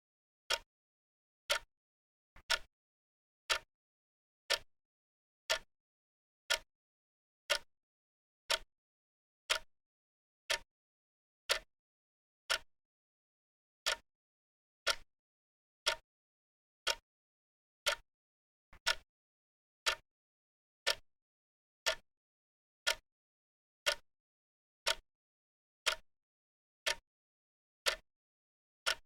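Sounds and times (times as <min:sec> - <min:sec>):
clock ticking: 0:01.5 - 0:01.7, 0:02.4 - 0:02.7, 0:03.5 - 0:03.7, 0:08.5 - 0:08.7, 0:09.5 - 0:09.7, 0:10.5 - 0:10.7, 0:11.5 - 0:11.7, 0:15.8 - 0:16.0, 0:16.8 - 0:17.0, 0:17.8 - 0:18.0, 0:18.8 - 0:19.0, 0:19.8 - 0:20.0, 0:20.8 - 0:21.0, 0:21.8 - 0:22.0, 0:24.8 - 0:25.0, 0:25.8 - 0:26.0, 0:27.8 - 0:28.0.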